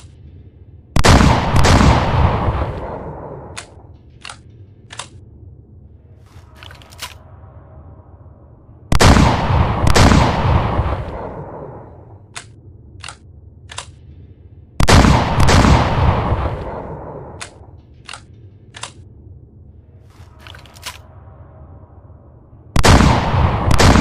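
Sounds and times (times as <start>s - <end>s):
shotgun shots echoing: 1.0s - 3.8s, 8.9s - 11.9s, 14.8s - 17.7s, 22.8s - 24.0s
sharp clicks: 2.7s - 5.2s, 12.3s - 14.0s, 16.6s - 19.1s.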